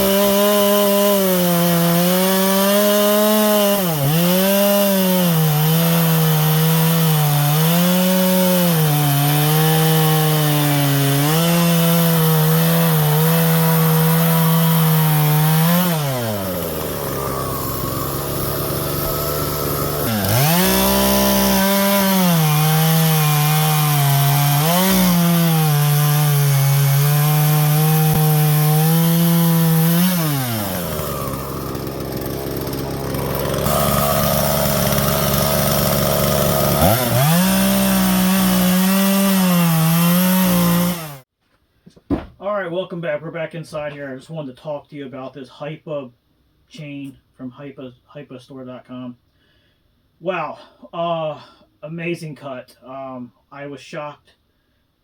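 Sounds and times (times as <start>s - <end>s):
chainsaw idling: 0.0s - 41.2s
chainsaw cutting wood: 0.0s - 41.3s.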